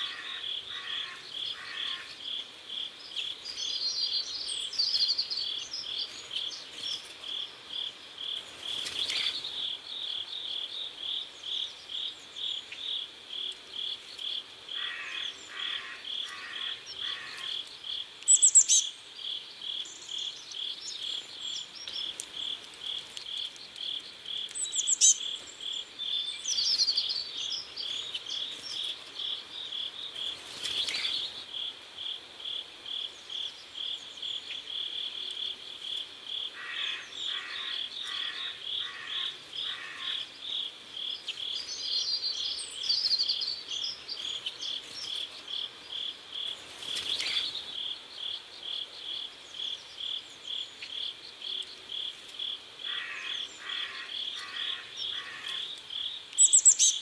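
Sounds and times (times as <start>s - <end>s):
crickets chirping: 0.0s - 57.0s
bird chirps: 13.8s - 31.4s, 52.9s - 57.0s.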